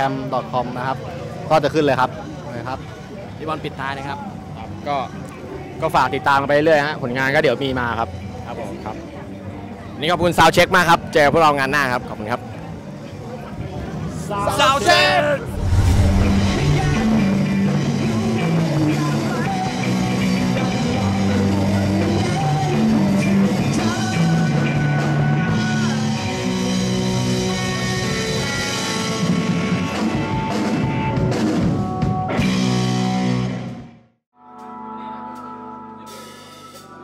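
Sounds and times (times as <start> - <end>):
rock music with singing: 15.5 - 27.1.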